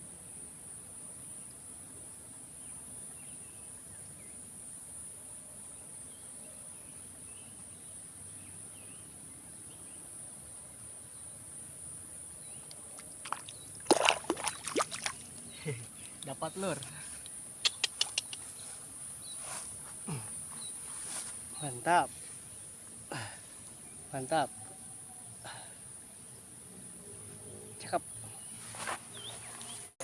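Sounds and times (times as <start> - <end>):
insects droning: 0.0 - 30.0
faint chirps: 15.1 - 25.9.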